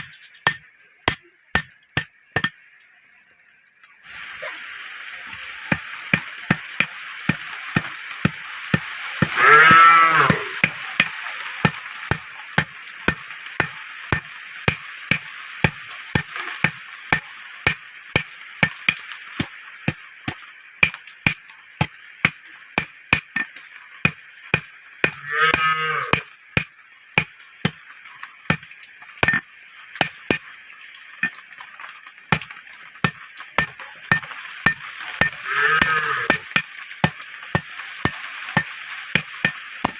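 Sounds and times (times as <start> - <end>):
cow mooing: 9.4 - 10.5, 35.5 - 36.3.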